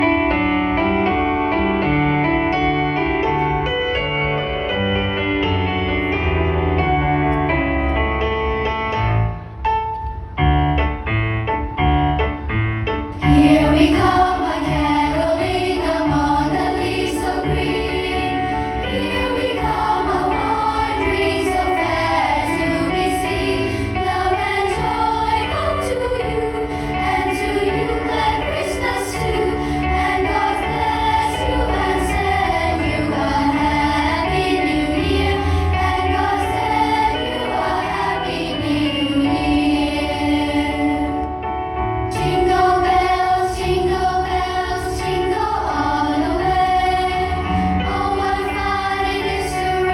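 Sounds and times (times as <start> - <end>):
piano notes: 0.0 - 49.9
choir singing: 13.2 - 49.9.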